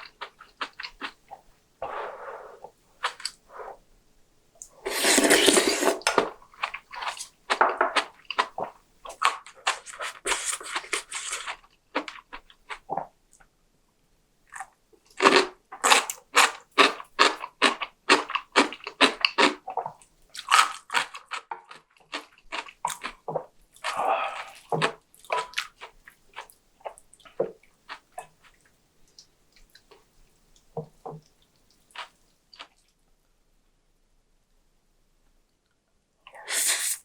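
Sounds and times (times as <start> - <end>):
chewing food: 0.0 - 1.4, 5.0 - 13.5, 14.5 - 33.0.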